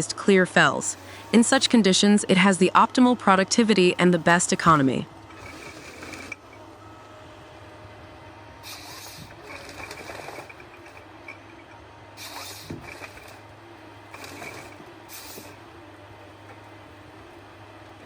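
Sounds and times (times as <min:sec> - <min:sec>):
engine hum: 0:00.0 - 0:18.0
hissing bursts: 0:08.6 - 0:10.5, 0:12.2 - 0:13.4, 0:14.2 - 0:15.6.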